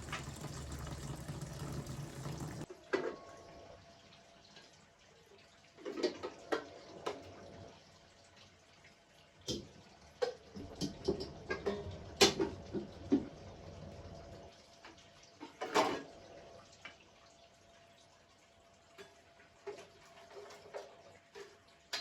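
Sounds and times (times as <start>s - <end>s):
water running: 0.0s - 2.7s.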